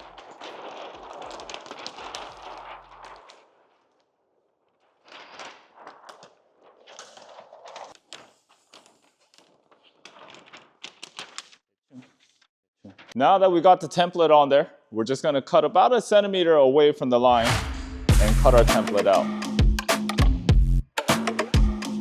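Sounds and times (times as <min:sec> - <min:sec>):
plastic film rustling and crackling: 0:00.0 - 0:13.2
background music: 0:17.4 - 0:22.0.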